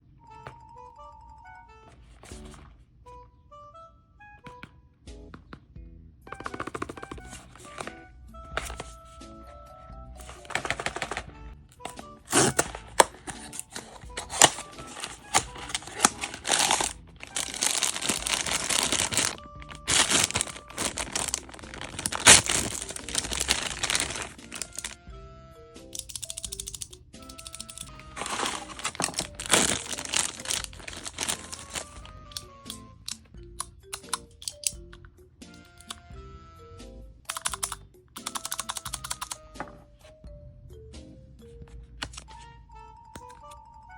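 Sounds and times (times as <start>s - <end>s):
light background music: 0.0s - 43.9s
packaging wrapper crinkling: 10.2s - 25.0s, 27.3s - 32.4s.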